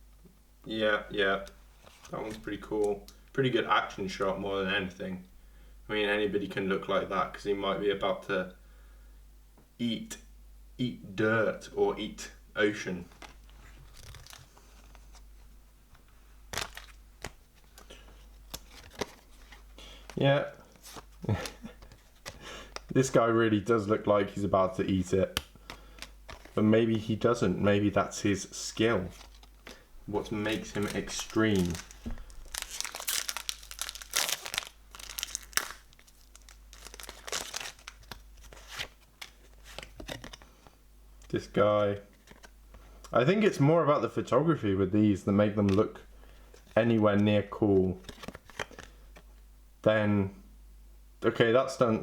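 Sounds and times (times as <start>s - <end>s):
paper cards rustling: 13.0s - 15.5s, 16.5s - 23.0s, 25.3s - 40.8s, 42.0s - 42.8s, 48.0s - 49.3s.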